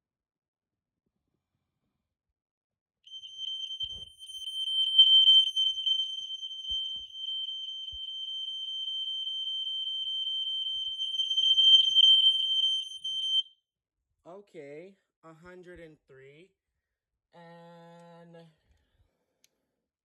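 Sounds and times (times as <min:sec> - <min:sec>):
fire alarm horn tone: 0:03.1 - 0:08.1, 0:08.8 - 0:13.4.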